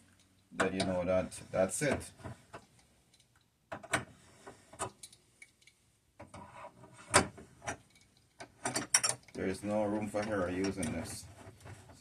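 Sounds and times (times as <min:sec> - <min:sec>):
hard parts clicking and tapping: 0:00.1 - 0:01.0, 0:07.1 - 0:12.0.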